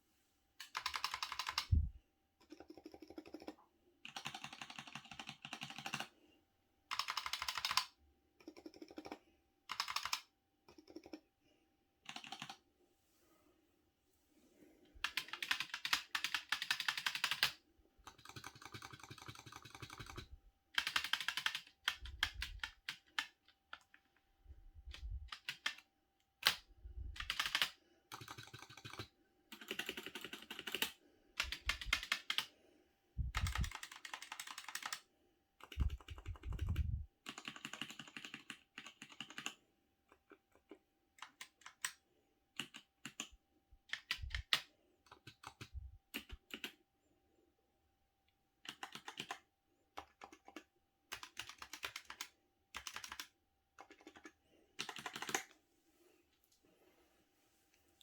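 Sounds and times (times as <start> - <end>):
mechanical keyboard keys clacking: 0.6 - 1.7, 2.5 - 6.1, 6.9 - 11.2, 15.0 - 24.0, 24.9 - 25.8, 27.2 - 32.5, 33.3 - 35.0, 35.6 - 41.9, 48.7 - 49.4, 50.0 - 55.5.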